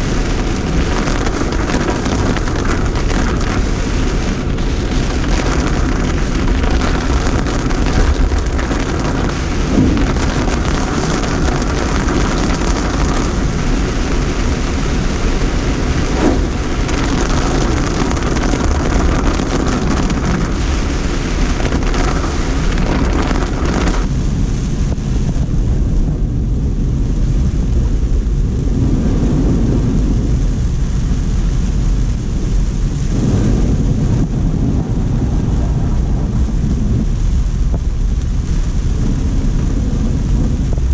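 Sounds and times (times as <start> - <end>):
heavy rain hissing: 0.0 - 40.9
wind rumbling on microphone: 0.0 - 40.9.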